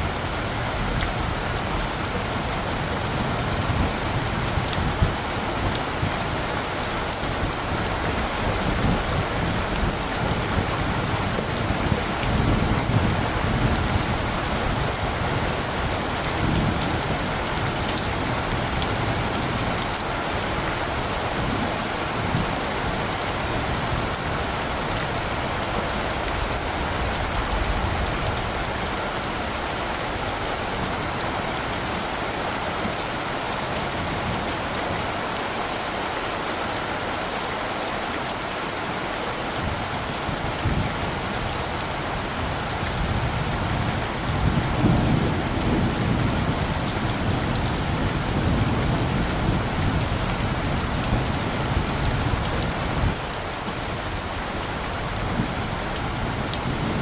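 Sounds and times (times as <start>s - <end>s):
low rumble of thunder: 0.0s - 31.8s, 39.7s - 53.2s
steady rainfall: 0.0s - 57.0s.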